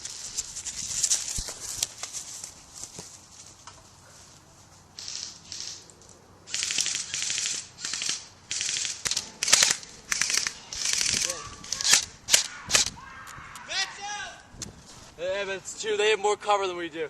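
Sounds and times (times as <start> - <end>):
airsoft guns firing bursts: 6.5 - 12.9.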